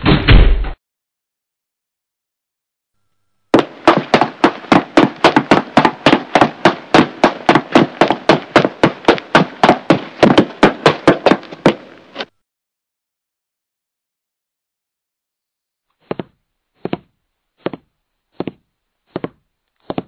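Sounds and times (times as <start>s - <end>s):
rapid sharp knocks: 3.6s - 11.9s.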